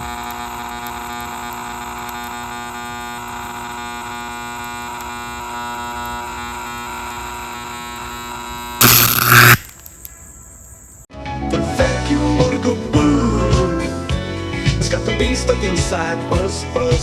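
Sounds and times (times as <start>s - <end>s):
vacuum cleaner motor humming: 0.0s - 11.0s.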